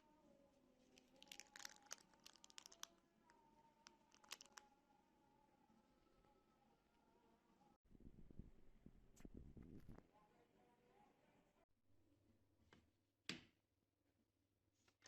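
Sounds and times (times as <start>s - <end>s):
faint crinkling and crackling: 0.8s - 3.0s, 3.9s - 4.6s.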